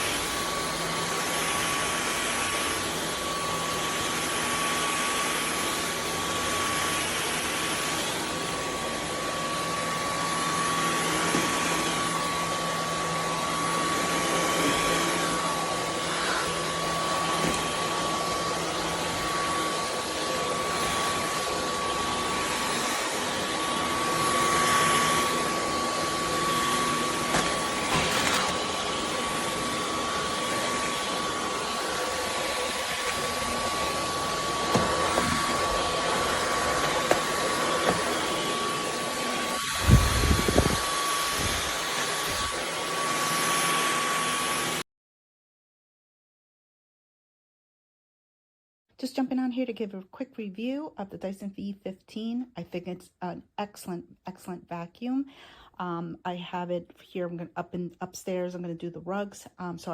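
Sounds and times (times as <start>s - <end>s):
cordless vacuum running: 0.0s - 44.8s.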